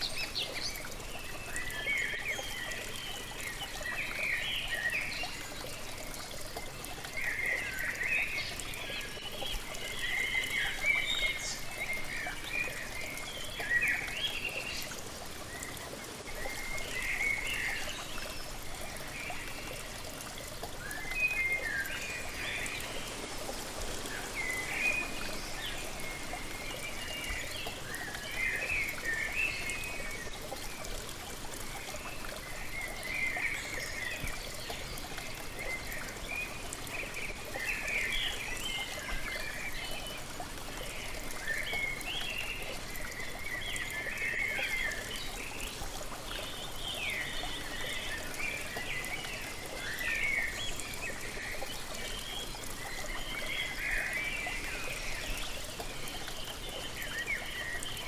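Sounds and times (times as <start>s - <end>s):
falling water rushing: 20.1s - 30.3s.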